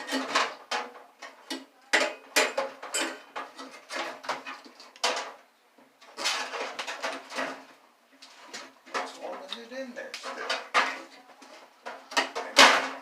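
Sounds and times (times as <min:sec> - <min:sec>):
metal parts clanking and rattling: 0:00.0 - 0:05.4, 0:06.1 - 0:07.7, 0:11.8 - 0:13.0.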